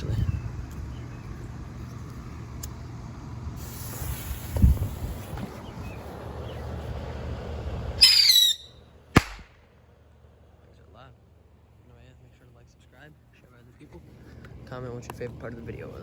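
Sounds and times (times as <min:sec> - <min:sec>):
low background rumble: 0:00.0 - 0:16.0
whistling bottle rocket launching: 0:08.0 - 0:09.6.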